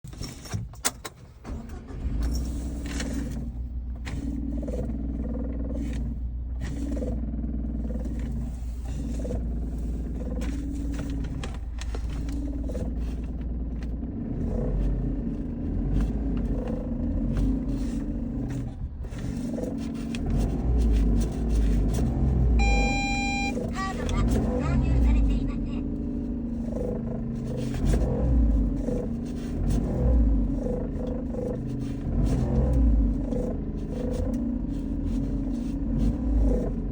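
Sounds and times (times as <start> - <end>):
clutch bearing noise: 0.1 - 24.5
van engine idling: 1.2 - 36.9
short electronic beep: 22.6 - 24.3.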